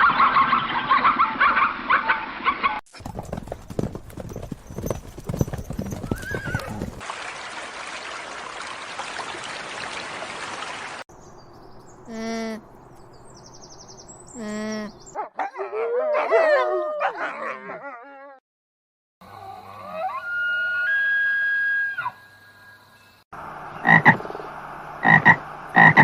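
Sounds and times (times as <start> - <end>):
hooves clip-clopping: 2.9 - 7.0
horse whinnying: 3.0 - 7.0.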